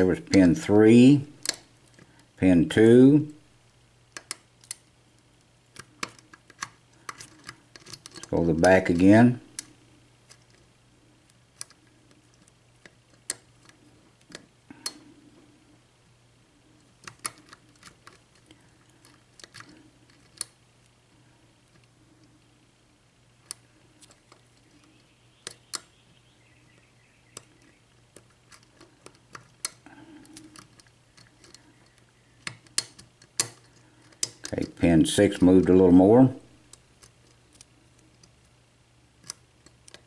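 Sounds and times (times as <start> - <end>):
lock pick clicking and scraping: 1.4 - 2.1, 4.1 - 4.9, 5.7 - 8.3, 8.9 - 10.7, 11.3 - 15.1, 16.9 - 20.6, 27.3 - 34.8, 39.2 - 40.0.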